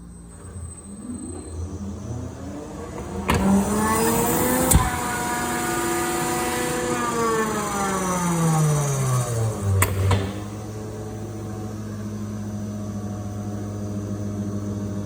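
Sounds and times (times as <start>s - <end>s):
air compressor motor whining: 0.0s - 15.0s
compressor switch click: 9.7s - 10.7s.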